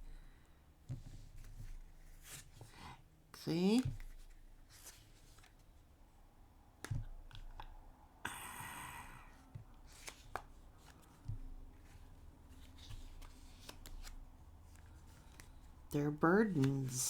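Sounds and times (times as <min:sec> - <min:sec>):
cards sliding rustle: 0:01.0 - 0:02.8, 0:03.6 - 0:05.8, 0:09.8 - 0:17.0
cards tapping and clicking: 0:03.6 - 0:04.3, 0:06.8 - 0:07.8, 0:09.6 - 0:17.0.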